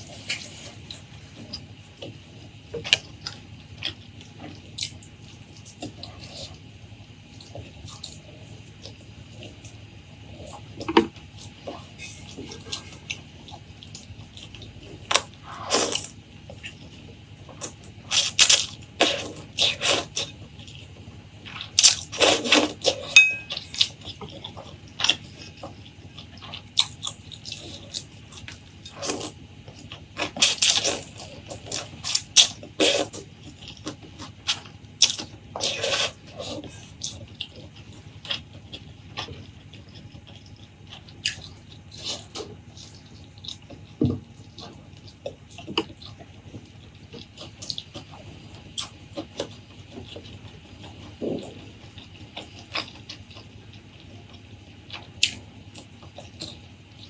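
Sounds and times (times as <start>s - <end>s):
wet chewing and mouth smacks: 21.5s - 57.0s.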